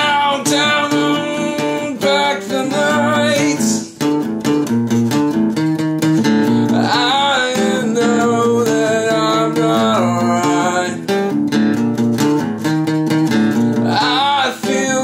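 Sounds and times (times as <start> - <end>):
strummed acoustic guitar chords: 0.0 - 15.0.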